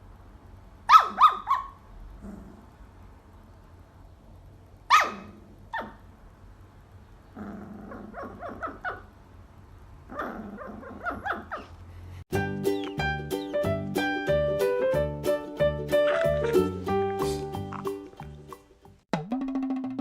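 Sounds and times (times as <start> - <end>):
dog barking and growling: 0.9 - 2.8, 4.9 - 6.1, 7.3 - 9.2, 10.0 - 11.8, 15.9 - 18.3.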